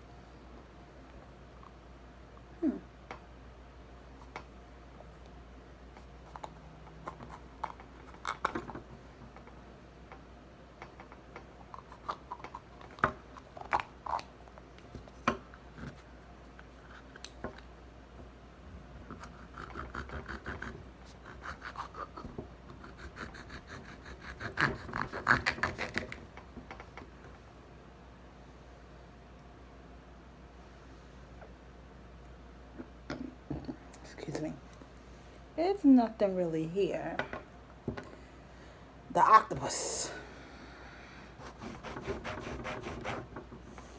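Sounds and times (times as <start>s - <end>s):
rubber toy being cut and scraped: 19.1s - 26.2s, 41.4s - 43.4s.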